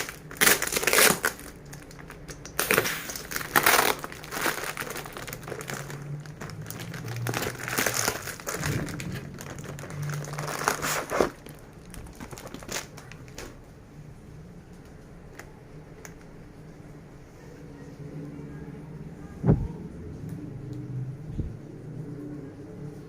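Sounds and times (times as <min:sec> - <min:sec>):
packaging crinkling and rustling: 0:00.0 - 0:13.7.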